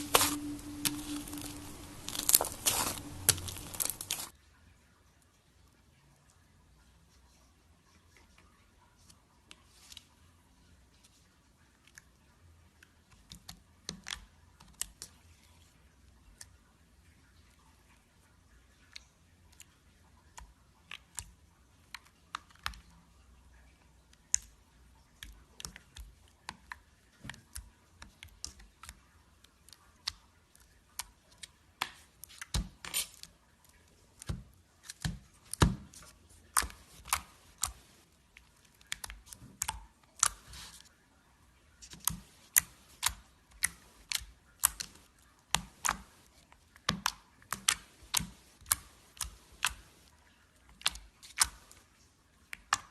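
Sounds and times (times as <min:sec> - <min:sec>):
slime squeezed by hand: 0:00.0 - 0:04.3.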